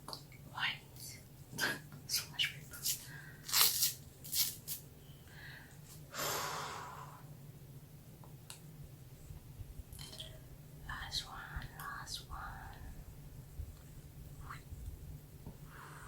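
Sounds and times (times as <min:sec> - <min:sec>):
breathy exhale: 0:05.3 - 0:07.3.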